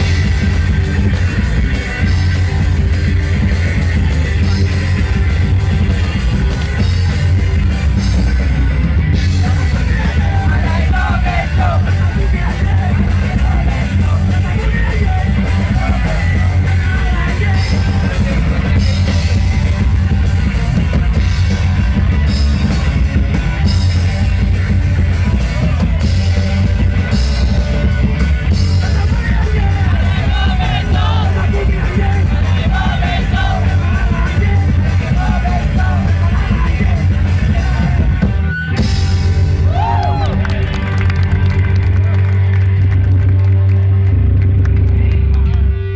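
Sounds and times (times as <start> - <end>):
punk rock band playing: 0.0 - 45.9
shouted singing: 9.3 - 20.7, 28.8 - 38.4, 39.6 - 40.7.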